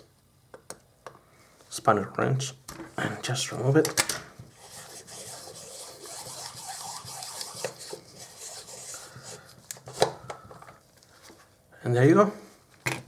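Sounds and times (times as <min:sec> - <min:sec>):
metal threads rubbing: 0:04.6 - 0:09.4.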